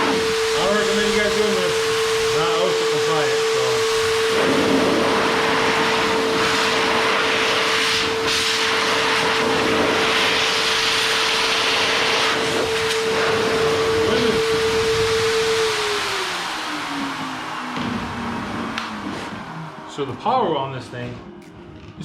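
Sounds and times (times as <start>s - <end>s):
rush of air from hose: 0.0s - 17.3s
car dryer motor whine: 0.0s - 22.0s.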